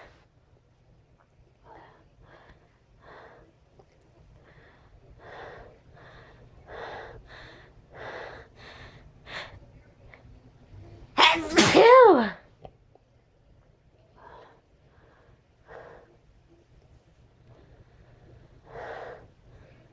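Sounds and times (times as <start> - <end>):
person gasping before a sneeze: 11.2 - 12.3.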